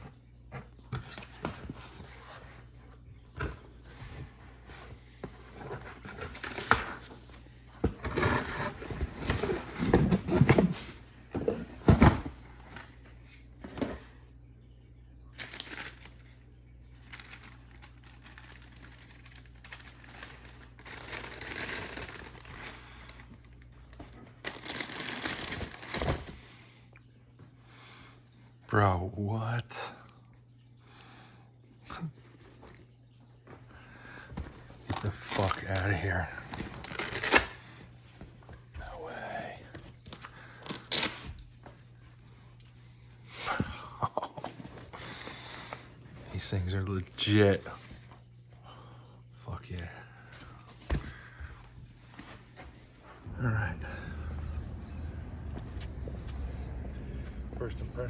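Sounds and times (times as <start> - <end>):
low steady hum: 0.0 - 58.0
paper and cardboard crinkling: 0.6 - 13.0, 15.4 - 26.4, 34.3 - 38.9.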